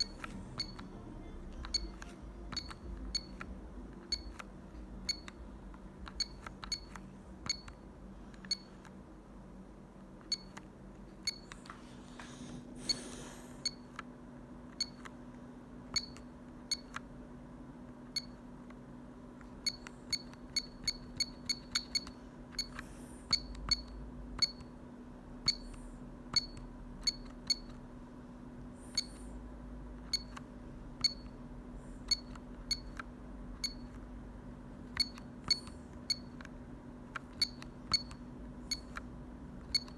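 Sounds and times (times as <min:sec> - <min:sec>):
telephone keypad beeps: 0:00.0 - 0:00.9, 0:01.6 - 0:03.4, 0:04.1 - 0:04.4, 0:06.1 - 0:07.8, 0:19.6 - 0:24.7, 0:32.1 - 0:33.0, 0:33.6 - 0:34.0, 0:35.0 - 0:36.4, 0:37.4 - 0:39.0, 0:39.7 - 0:39.9
faint steady hum: 0:00.0 - 0:39.9.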